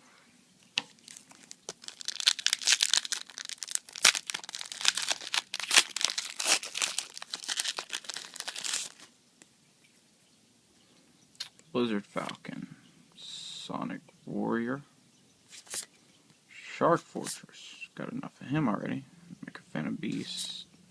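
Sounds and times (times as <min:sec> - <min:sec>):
foil wrapper crinkling and tearing: 0:00.8 - 0:09.1.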